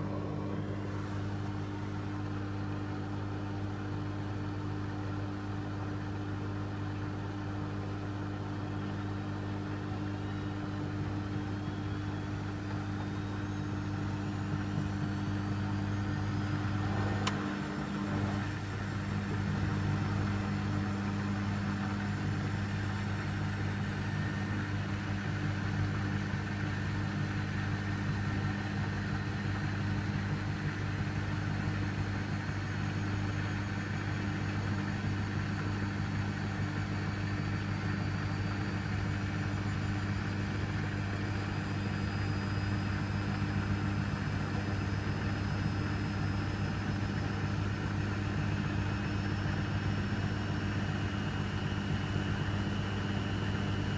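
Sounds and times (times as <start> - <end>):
washing machine humming: 0.0 - 53.9
faint high whine: 10.2 - 23.4.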